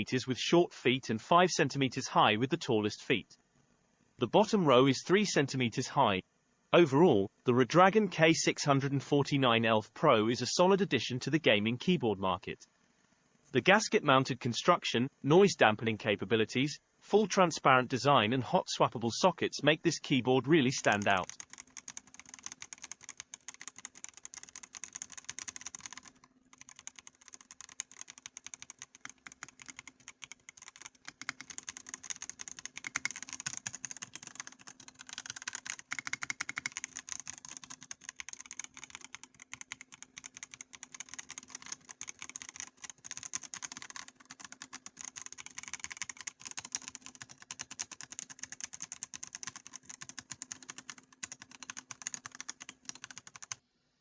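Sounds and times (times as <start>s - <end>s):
fast mechanical keyboard typing: 20.6s - 53.6s.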